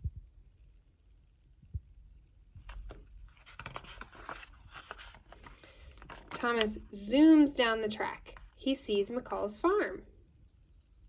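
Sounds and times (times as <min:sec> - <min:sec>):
book pages rustling: 0:02.6 - 0:08.7.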